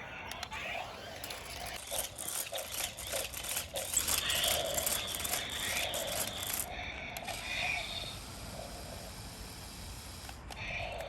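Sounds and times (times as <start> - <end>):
toy motor whirring and clicking: 0.1 - 11.0.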